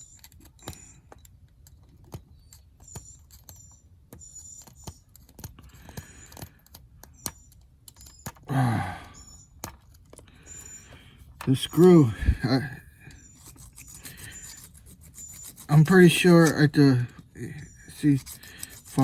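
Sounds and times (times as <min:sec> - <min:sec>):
hand tools clicking and tapping: 0:00.0 - 0:19.0
brief vocal sound: 0:08.5 - 0:09.1.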